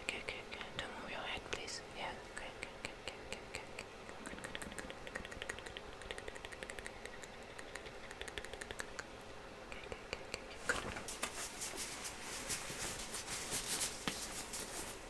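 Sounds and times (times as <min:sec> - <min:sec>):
faint steady hiss: 0:00.0 - 0:15.0
fast light clicks and taps: 0:02.4 - 0:11.8.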